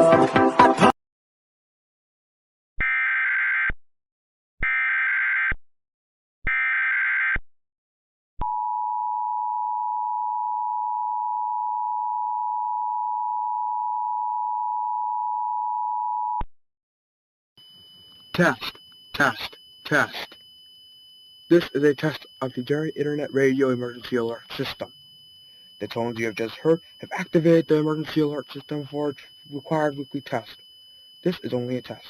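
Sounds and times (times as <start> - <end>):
two-tone attention signal: 17.6 - 20.4, 21.4 - 32.0
digital header data bursts: 17.6 - 20.5, 21.4 - 32.0.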